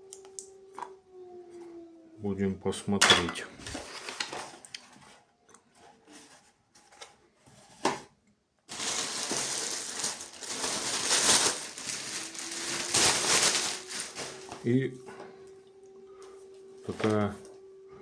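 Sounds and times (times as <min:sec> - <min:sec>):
plastic packaging crinkling: 0:08.7 - 0:15.0.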